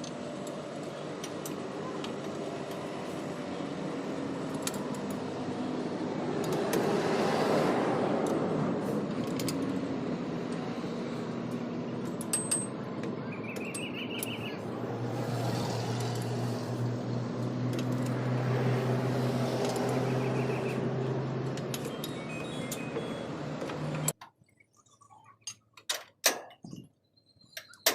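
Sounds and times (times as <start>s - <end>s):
sharp metallic clicks: 11.5s - 14.5s
high chirps: 13.3s - 14.6s.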